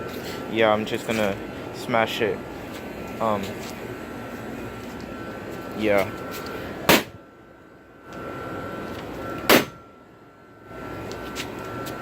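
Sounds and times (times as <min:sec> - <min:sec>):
computer monitor being struck: 0:06.9 - 0:07.2, 0:09.5 - 0:09.8.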